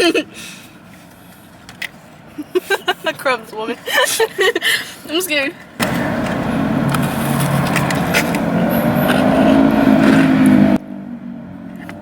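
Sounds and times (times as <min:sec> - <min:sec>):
vehicle engine running: 0:05.8 - 0:12.0.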